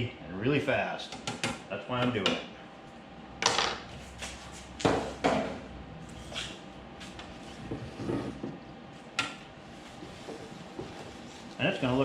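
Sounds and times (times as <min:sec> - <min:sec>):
knocks and clatters on a workbench: 0:01.1 - 0:02.5, 0:03.4 - 0:03.9, 0:04.8 - 0:05.6, 0:07.6 - 0:08.6.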